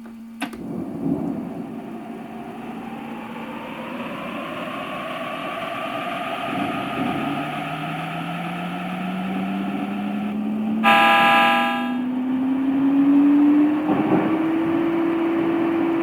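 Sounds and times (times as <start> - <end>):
electric train motors whining: 1.5 - 12.4.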